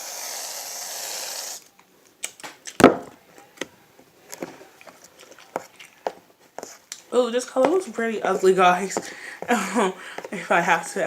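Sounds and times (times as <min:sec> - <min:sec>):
aerosol can hissing: 0:00.0 - 0:01.6.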